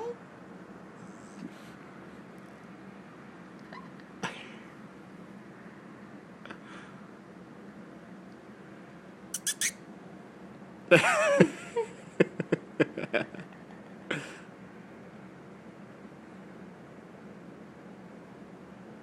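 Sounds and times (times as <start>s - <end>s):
sharp mouth clicks: 9.4s - 9.7s.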